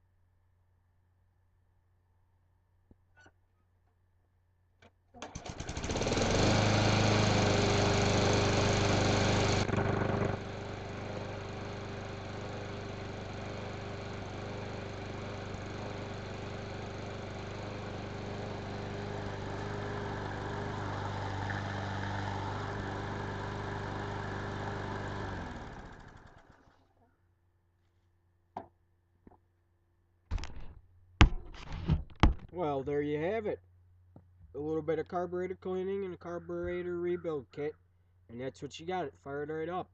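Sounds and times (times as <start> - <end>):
lawn mower engine running: 5.2 - 26.9.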